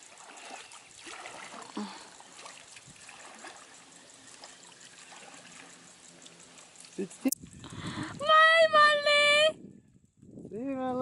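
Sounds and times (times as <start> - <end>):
river water running: 0.0 - 7.4.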